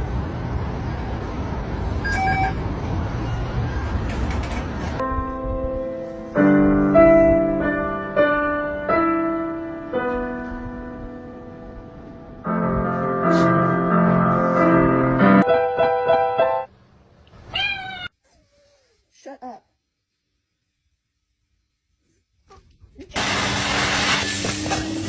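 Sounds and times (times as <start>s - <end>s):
piano notes and chords: 5.0s - 16.7s.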